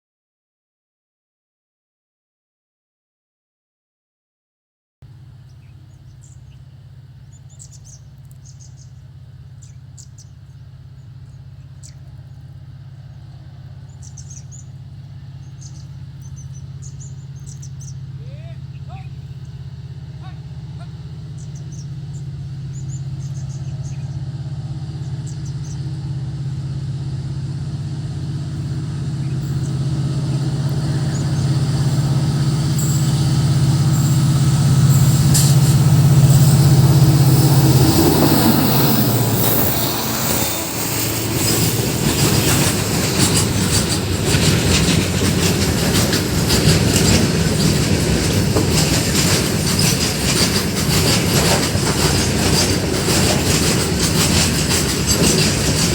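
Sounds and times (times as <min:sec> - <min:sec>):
diesel locomotive engine hum: 0:05.0 - 0:55.9
freight wagons rattling over rails: 0:25.1 - 0:55.9.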